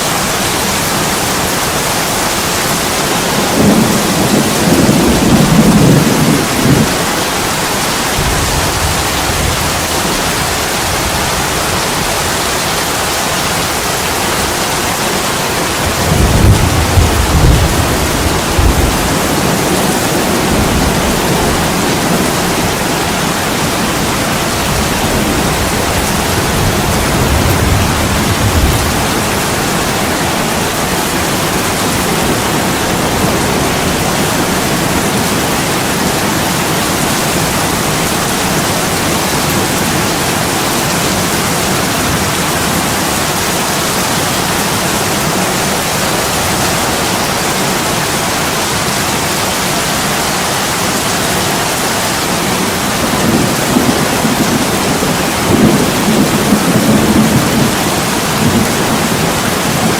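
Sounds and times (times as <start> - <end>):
heavy rain: 0.0 - 59.9
distant thunder rumble: 3.0 - 11.8, 15.6 - 40.2, 52.7 - 59.9.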